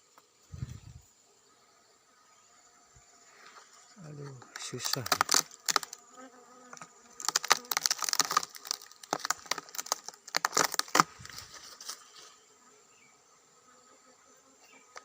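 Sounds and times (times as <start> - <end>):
dry plant material crackling: 4.0 - 6.0, 6.7 - 12.3.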